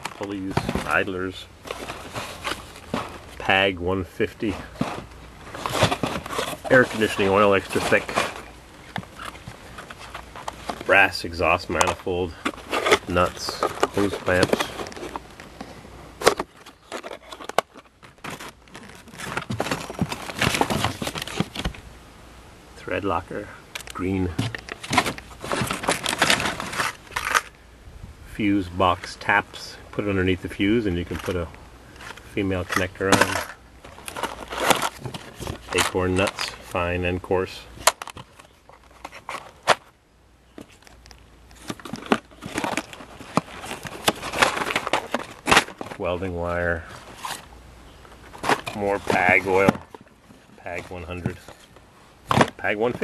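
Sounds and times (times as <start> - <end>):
packaging rustling: 0.0 - 3.6, 4.2 - 21.8, 23.7 - 27.5, 32.0 - 36.9, 40.5 - 47.5, 48.1 - 53.0.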